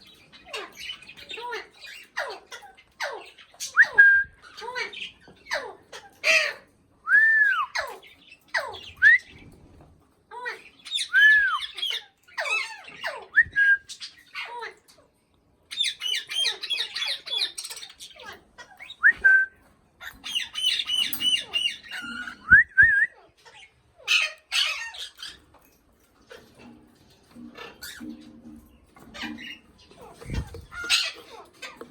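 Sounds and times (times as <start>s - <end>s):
parrot squawking and whistling: 2.1s - 4.6s, 10.9s - 14.2s, 15.8s - 25.4s
parrot chattering: 29.0s - 31.9s.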